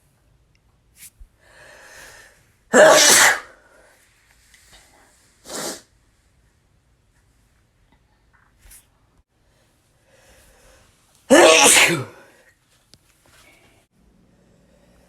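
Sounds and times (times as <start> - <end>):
man sneezing: 2.7 - 3.6, 11.3 - 12.3.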